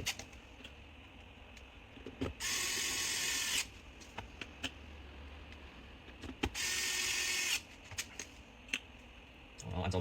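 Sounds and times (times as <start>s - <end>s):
electric screwdriver whirring: 2.4s - 3.7s, 6.5s - 7.6s.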